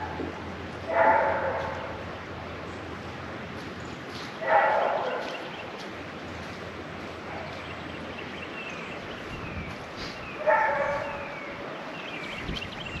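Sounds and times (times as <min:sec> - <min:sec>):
dog barking: 0:00.9 - 0:01.9, 0:04.4 - 0:05.5, 0:10.4 - 0:11.4.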